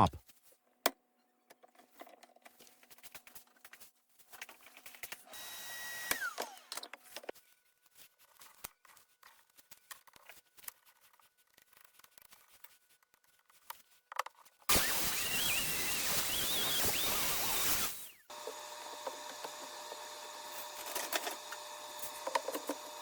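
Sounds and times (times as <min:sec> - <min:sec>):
power tool motor whining: 0:05.3 - 0:06.7, 0:14.7 - 0:23.0
loud power tool running: 0:14.7 - 0:23.0
clicks and knocks of tools: 0:20.6 - 0:23.0.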